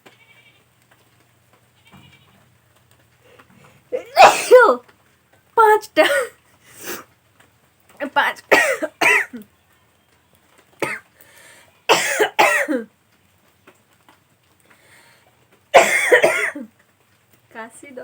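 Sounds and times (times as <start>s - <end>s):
person coughing: 4.0s - 4.7s, 6.0s - 6.3s, 8.5s - 9.4s, 11.9s - 12.8s, 15.8s - 16.6s.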